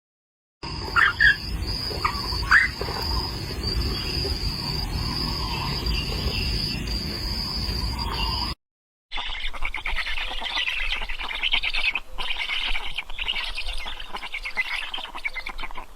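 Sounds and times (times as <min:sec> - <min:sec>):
insects trilling: 0:00.6 - 0:08.6
short rising chirps: 0:00.6 - 0:08.6
low rumble: 0:00.7 - 0:08.6.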